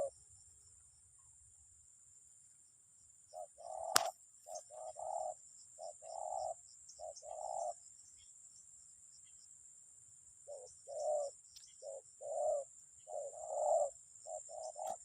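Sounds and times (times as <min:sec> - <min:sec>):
dove cooing: 0:03.3 - 0:07.8, 0:10.4 - 0:15.0
sharp click: 0:03.9 - 0:04.2.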